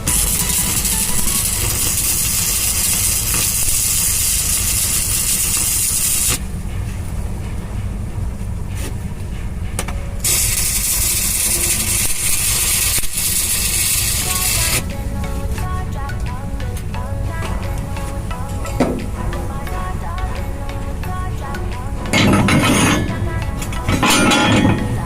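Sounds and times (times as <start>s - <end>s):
welding arc crackling and hissing: 0.0s - 6.4s, 10.2s - 15.6s.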